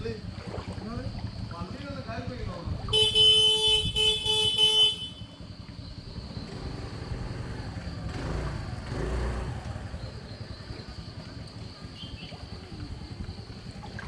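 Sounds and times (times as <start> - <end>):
engine rumble: 0.0 - 14.0
road noise of passing vehicle: 0.0 - 14.0
vehicle horn: 2.9 - 5.4.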